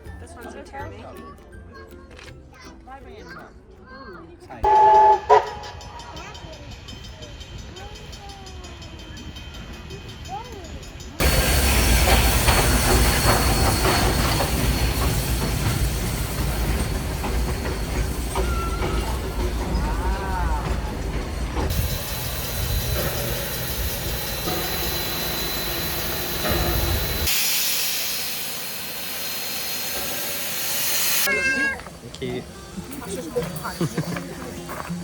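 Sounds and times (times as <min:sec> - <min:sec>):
steam train rumble: 0:04.6 - 0:35.0
hiss of steam: 0:11.2 - 0:19.2, 0:21.7 - 0:31.6.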